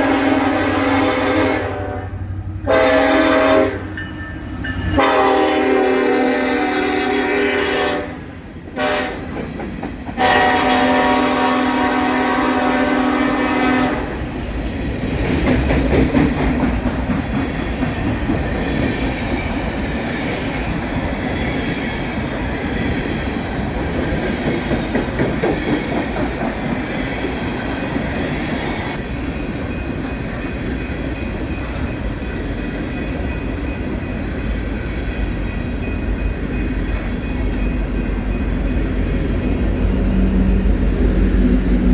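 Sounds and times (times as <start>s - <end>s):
locomotive air horn blast: 0.0s - 4.0s, 5.0s - 9.3s, 10.2s - 14.2s
freight train rumbling past: 0.0s - 41.9s
wheels clattering on rails: 8.6s - 10.6s, 14.2s - 41.9s.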